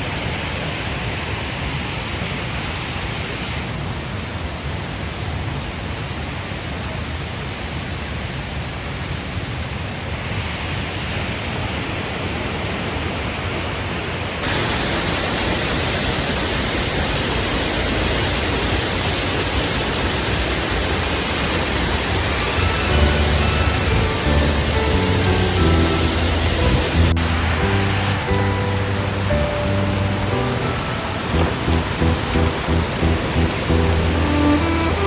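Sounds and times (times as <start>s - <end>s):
waterfall: 0.0s - 35.0s.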